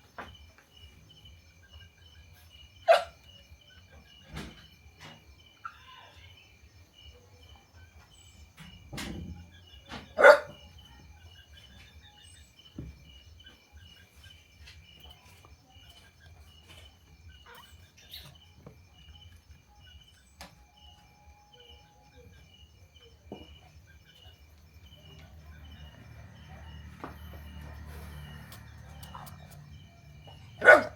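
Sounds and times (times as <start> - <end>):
insects chirping: 0.0 - 30.9
puppy barking: 2.9 - 3.3, 10.1 - 10.8, 30.2 - 30.9.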